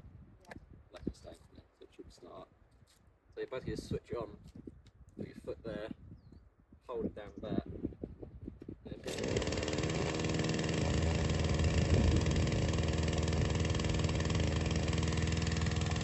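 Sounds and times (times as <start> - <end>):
chainsaw pull-start: 9.0 - 16.0
chainsaw idling: 9.1 - 16.0.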